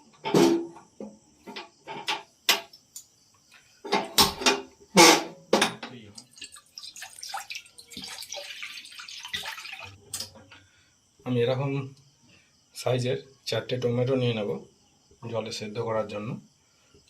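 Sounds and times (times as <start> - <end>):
water pouring into a pan: 6.2 - 10.2.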